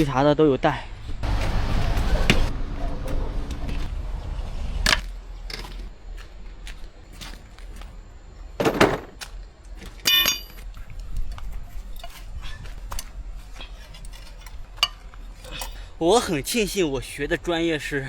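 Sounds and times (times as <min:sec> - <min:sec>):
metal hand tools clinking: 0:10.0 - 0:10.6.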